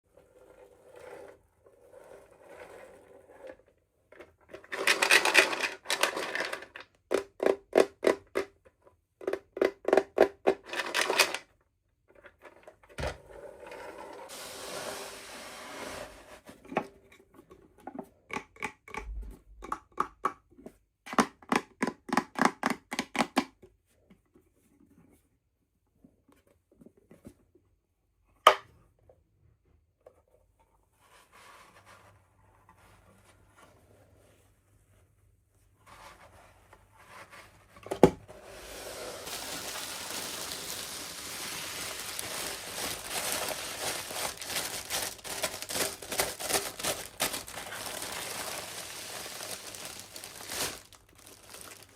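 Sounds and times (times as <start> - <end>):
packaging crinkling and scraping: 4.7 - 6.7, 10.7 - 11.4, 14.3 - 16.2, 38.4 - 51.9
packaging tearing: 39.2 - 51.9.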